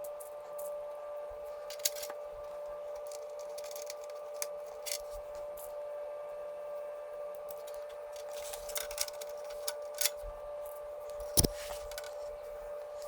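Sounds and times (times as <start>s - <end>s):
faint hum: 0.0s - 13.0s.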